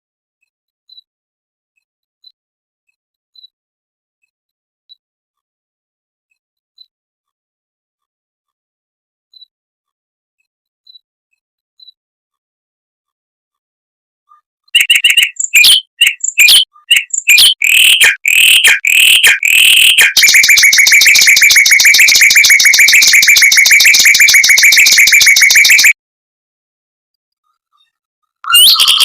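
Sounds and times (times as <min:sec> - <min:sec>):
mockingbird singing: 0:14.8 - 0:25.9, 0:28.5 - 0:29.0.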